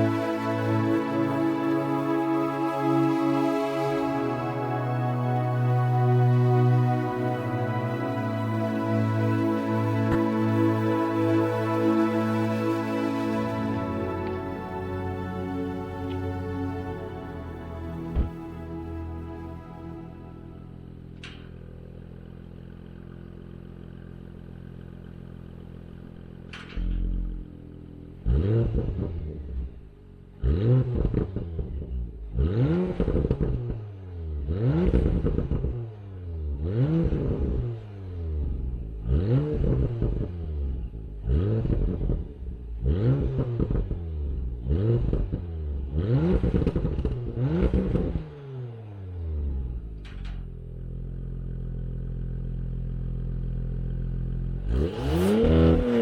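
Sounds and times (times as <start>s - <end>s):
car engine idling and revving: 0.0s - 56.0s
click: 21.2s - 21.5s, 26.5s - 27.0s, 50.0s - 50.5s.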